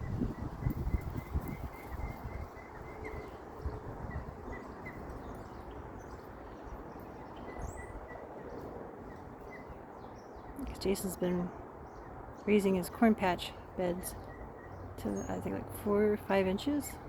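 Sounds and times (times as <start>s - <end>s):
ducklings cheeping: 0.0s - 11.4s
high bird chirp: 0.0s - 12.9s
outdoor noise haze: 0.0s - 17.0s.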